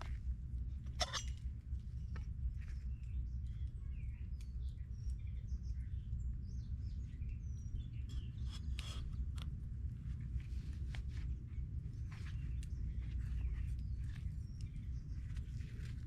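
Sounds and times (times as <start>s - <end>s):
birds chirping: 11.9s - 16.0s.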